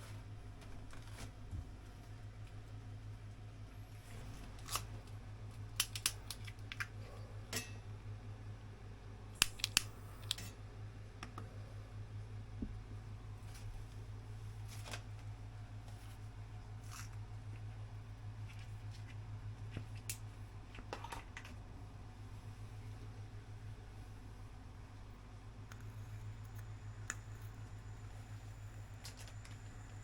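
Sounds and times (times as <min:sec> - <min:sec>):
steady low hum: 0:00.0 - 0:30.0
sharp clicks and snips: 0:04.6 - 0:07.0, 0:09.4 - 0:10.6.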